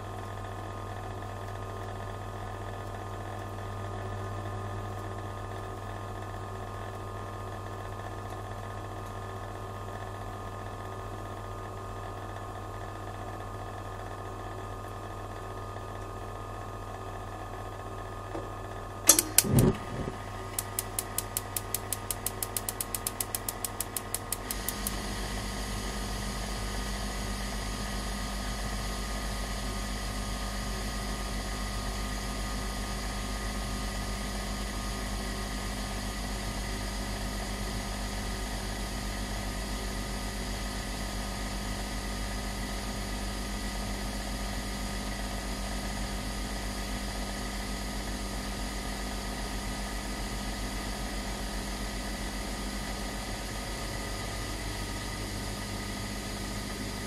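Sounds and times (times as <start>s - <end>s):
gas heater humming: 14.7s - 32.9s, 48.4s - 57.0s
heater control clicks: 19.1s - 25.0s
igniter ticking: 19.1s - 25.0s
gas flame hissing: 19.1s - 26.4s.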